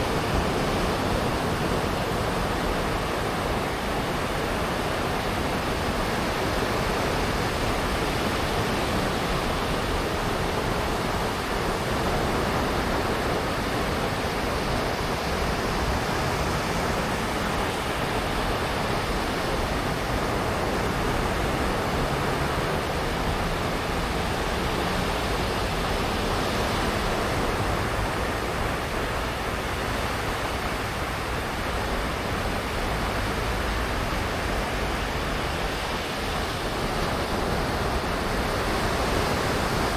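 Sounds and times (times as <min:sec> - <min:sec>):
surf washing onto beach: 0:00.0 - 0:39.9.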